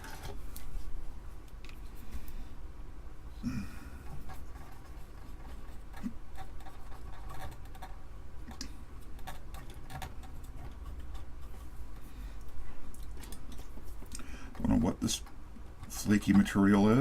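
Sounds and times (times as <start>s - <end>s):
scratching on circuit board: 4.1s - 11.8s.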